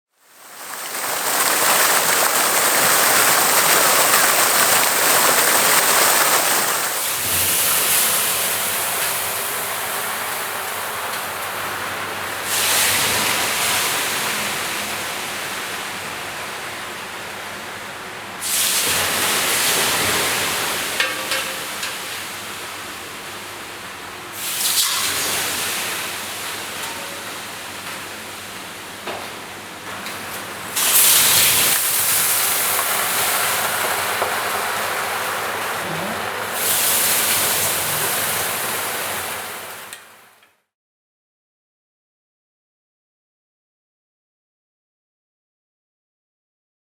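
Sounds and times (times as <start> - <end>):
water hissing on hot stones: 0.2 - 15.5, 18.4 - 22.4, 30.6 - 39.9.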